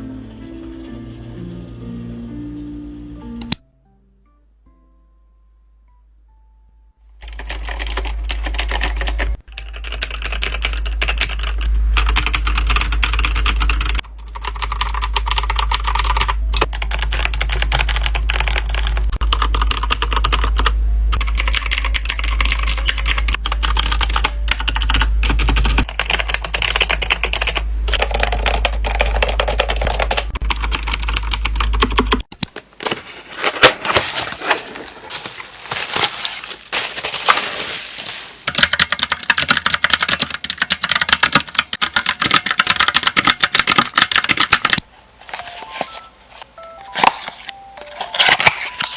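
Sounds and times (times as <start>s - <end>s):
low steady hum: 0.0s - 38.5s
typing on computer keyboard: 7.2s - 32.3s, 38.5s - 44.8s.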